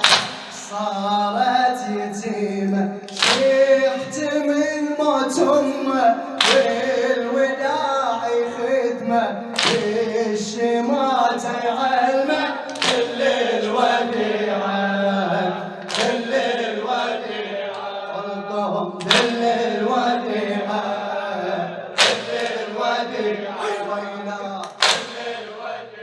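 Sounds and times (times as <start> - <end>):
unison chest-beating slaps: 0.0 - 0.7, 3.1 - 3.6, 6.4 - 6.8, 9.6 - 10.0, 12.7 - 13.4, 15.8 - 16.5, 19.0 - 19.5, 22.0 - 22.7, 24.6 - 25.5
men chanting a lament: 0.0 - 26.0.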